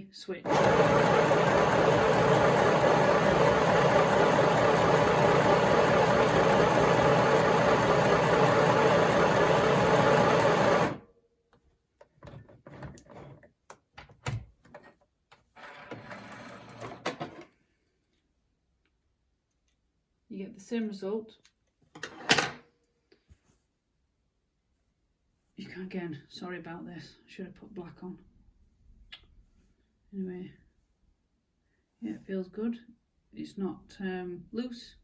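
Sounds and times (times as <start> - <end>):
sewing machine stitching: 0.4 - 11.0.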